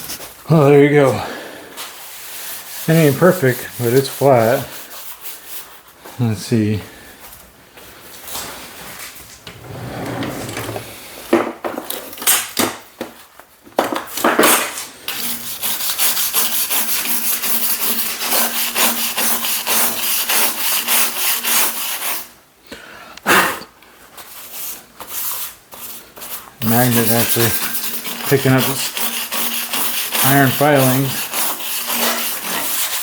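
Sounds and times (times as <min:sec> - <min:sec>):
rubbing and scrubbing on steel: 0:24.4 - 0:33.0.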